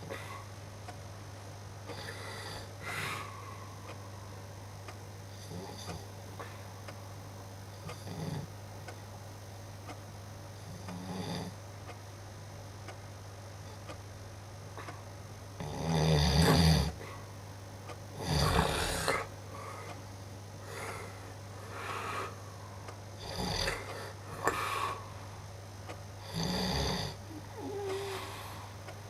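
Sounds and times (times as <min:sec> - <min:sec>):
man snoring loudly: 0:15.6 - 0:17.0, 0:18.2 - 0:19.3, 0:23.2 - 0:24.6, 0:26.2 - 0:28.3.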